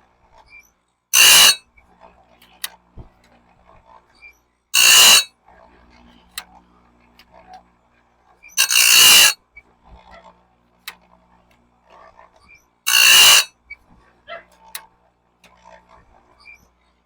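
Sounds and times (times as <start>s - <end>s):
grinding wheel grinding saw teeth: 1.2s - 1.6s, 4.8s - 5.3s, 8.6s - 9.4s, 12.9s - 13.5s.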